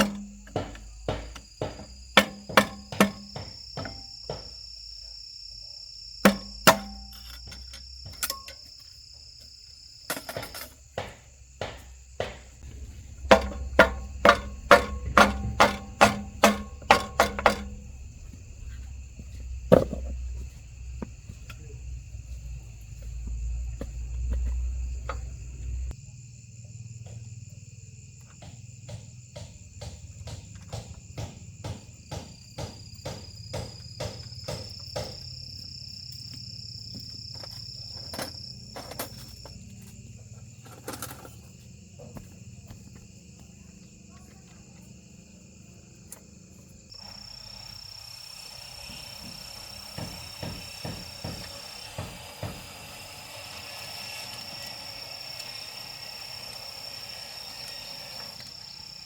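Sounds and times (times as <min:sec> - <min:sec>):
hammer striking metal: 0:00.0 - 0:04.5, 0:06.3 - 0:08.6, 0:10.1 - 0:18.1
high insect buzz: 0:00.0 - 0:29.8, 0:30.8 - 0:59.0.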